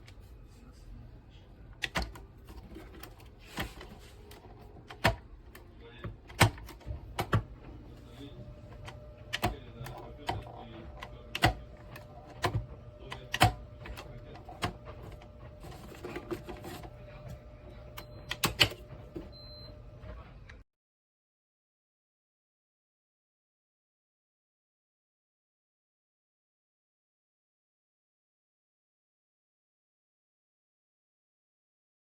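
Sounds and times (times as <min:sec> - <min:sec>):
hard objects clicking and knocking: 0:01.8 - 0:07.8.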